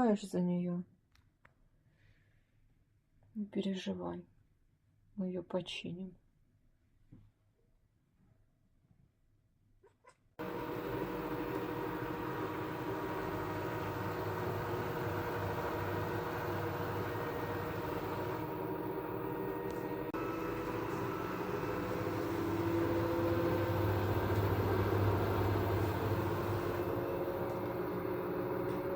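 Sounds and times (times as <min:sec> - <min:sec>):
washing machine humming and whining: 0:10.4 - 0:28.9.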